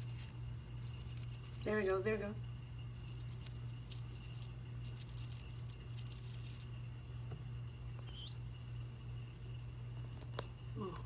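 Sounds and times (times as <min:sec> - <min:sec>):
low hum: 0:00.0 - 0:11.0
high rising chirp: 0:08.0 - 0:08.7.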